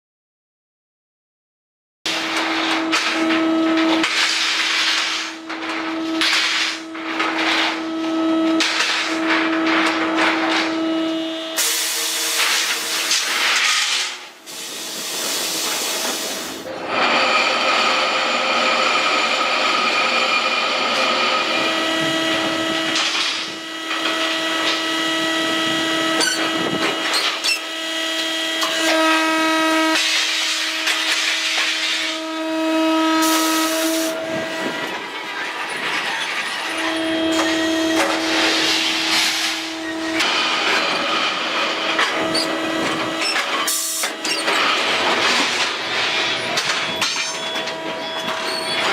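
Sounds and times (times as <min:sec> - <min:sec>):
pitched machine hum: 0:02.1 - 0:12.1, 0:16.7 - 0:35.3, 0:36.6 - 0:48.9
hydraulic hissing: 0:14.4 - 0:16.7.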